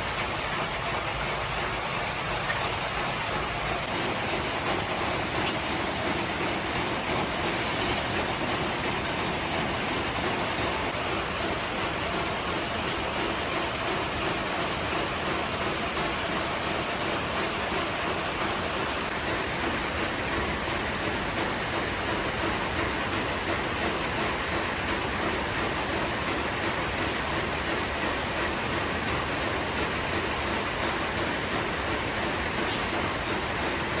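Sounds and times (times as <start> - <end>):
factory machinery clattering: 0.0 - 34.0.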